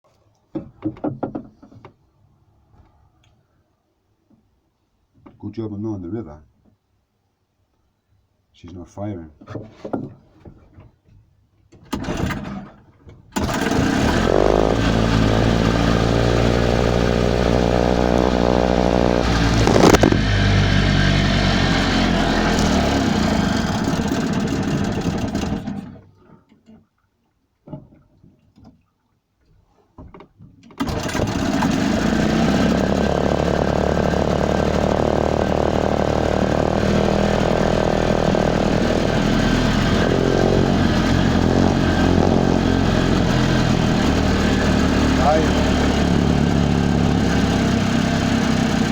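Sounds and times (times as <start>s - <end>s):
engine spluttering and coughing: 13.4s - 25.8s, 30.8s - 48.9s
boat engine running: 13.4s - 26.0s, 30.8s - 48.9s.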